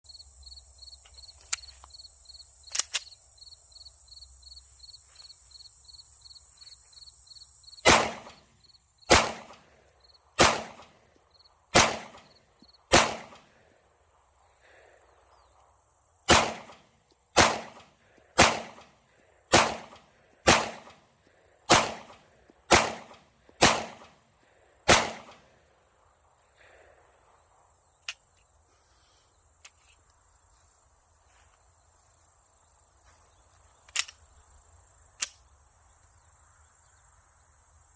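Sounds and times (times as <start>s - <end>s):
pistol shots: 7.8s - 8.5s, 9.1s - 9.7s, 10.4s - 11.0s, 11.7s - 13.5s, 16.3s - 18.9s, 19.5s - 21.0s, 21.7s - 24.2s, 24.8s - 25.5s.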